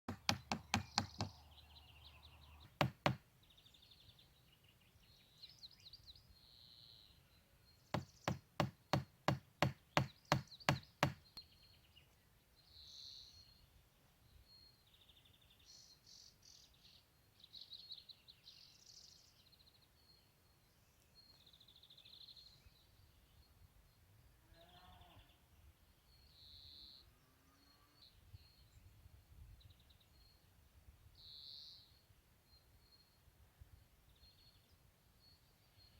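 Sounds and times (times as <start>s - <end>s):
tool striking wood: 0.1s - 1.3s, 2.6s - 3.2s, 8.0s - 11.2s
birds chirping: 0.1s - 13.6s.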